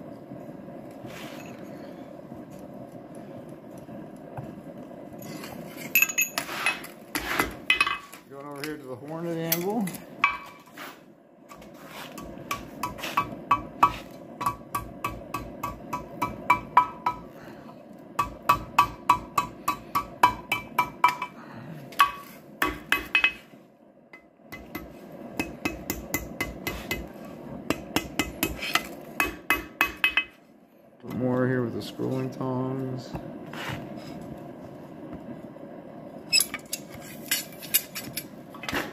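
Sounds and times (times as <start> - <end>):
hammer striking steel on anvil: 9.5 - 10.6, 12.2 - 17.3, 18.2 - 21.4, 22.0 - 23.4, 24.5 - 27.1, 27.7 - 30.4.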